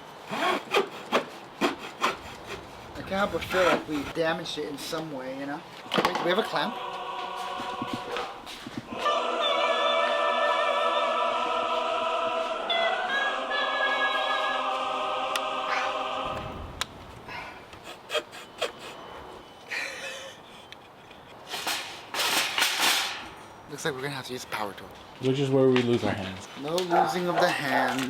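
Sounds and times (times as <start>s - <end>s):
choir singing held notes: 6.3s - 17.8s.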